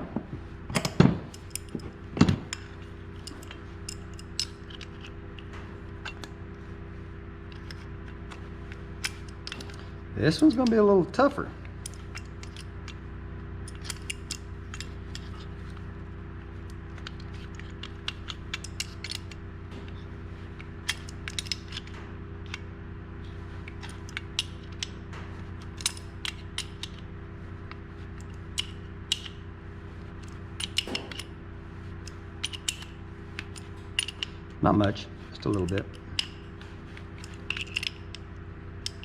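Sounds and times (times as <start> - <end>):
low hum: 0.0 - 39.0
ratchet wrench clicking: 32.0 - 34.3, 35.4 - 38.2.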